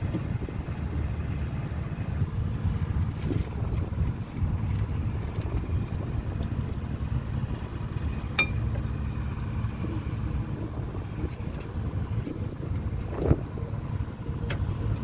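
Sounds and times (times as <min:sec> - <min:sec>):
car engine low rumble: 0:00.0 - 0:15.0.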